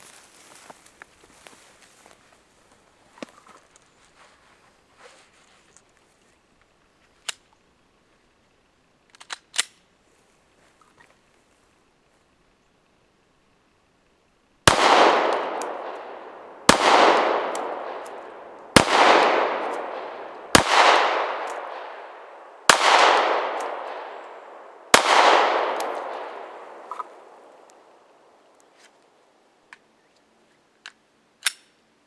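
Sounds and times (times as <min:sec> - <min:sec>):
pistol shots echoing: 0:14.6 - 0:28.0.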